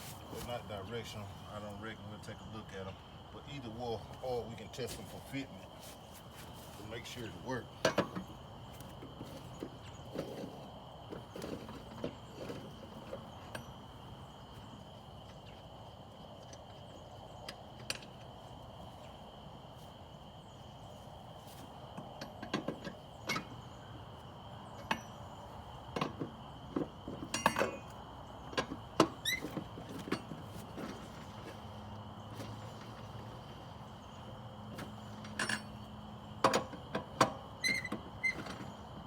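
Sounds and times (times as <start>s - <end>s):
knocks and clanks of mower wheel: 6.4s - 15.4s, 21.9s - 33.2s, 33.8s - 39.0s.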